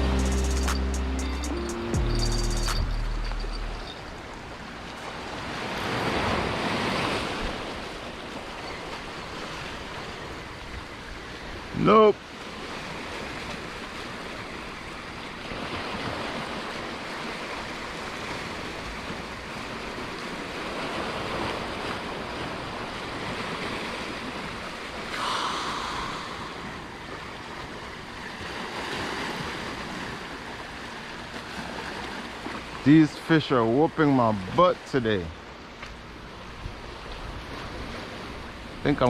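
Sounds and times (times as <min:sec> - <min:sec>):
ocean surf washing in: 0:15.3 - 0:35.5
wind on microphone: 0:25.0 - 0:28.6.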